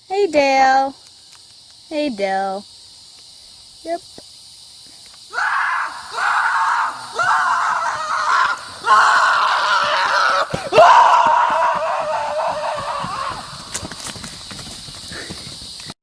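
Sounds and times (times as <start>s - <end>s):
person screaming: 5.3s - 13.5s.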